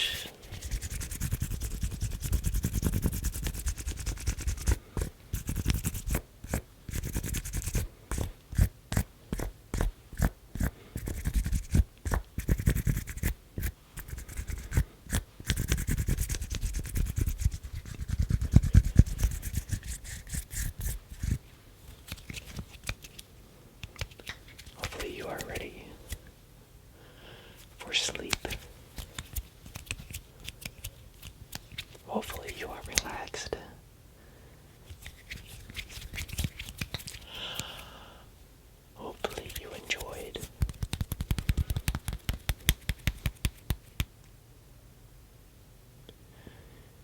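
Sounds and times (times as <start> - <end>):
knuckle strokes: 7.3 - 23.2, 27.6 - 33.1, 34.9 - 37.9, 39.2 - 44.1.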